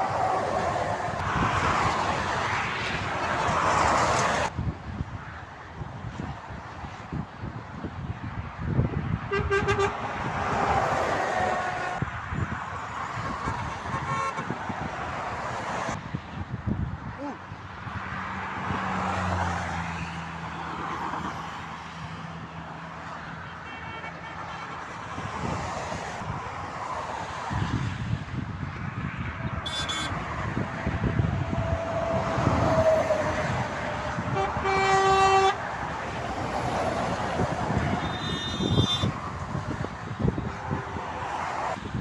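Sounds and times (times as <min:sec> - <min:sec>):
motorway traffic passing: 0:00.0 - 0:42.0
vehicle horn blast: 0:09.3 - 0:10.0, 0:13.5 - 0:14.6, 0:23.5 - 0:24.8, 0:29.5 - 0:30.2, 0:34.3 - 0:35.6, 0:37.9 - 0:39.2.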